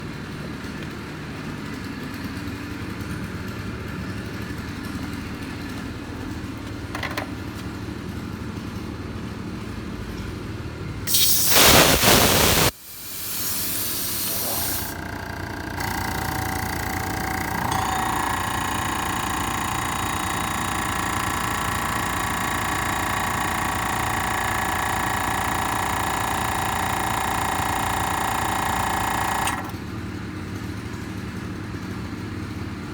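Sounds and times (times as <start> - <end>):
air compressor drone: 11.1 - 29.9.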